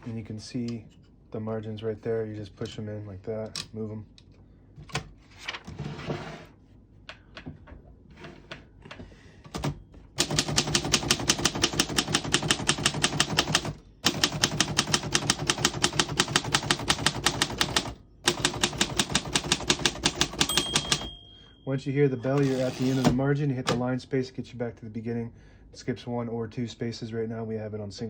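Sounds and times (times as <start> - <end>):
typewriter carriage clicks: 9.6 - 21.2, 22.2 - 23.8
typewriter key strikes: 10.2 - 21.2.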